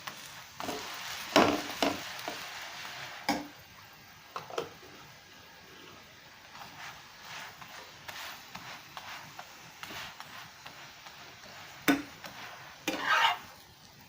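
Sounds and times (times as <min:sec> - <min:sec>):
flatbread sizzling in pan: 0:00.0 - 0:14.0
scrapes and taps on pan: 0:00.6 - 0:02.4, 0:09.8 - 0:13.4.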